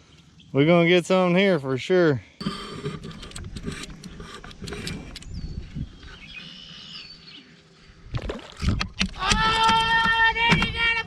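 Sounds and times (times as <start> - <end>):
faint bird chirp: 5.1 - 7.9.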